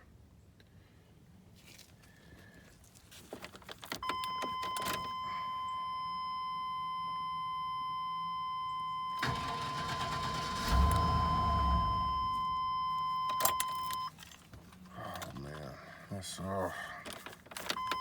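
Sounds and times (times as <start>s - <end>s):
high warning tone: 4.1s - 14.1s
starter cranking engine: 9.2s - 12.3s
key clicks: 13.0s - 14.2s.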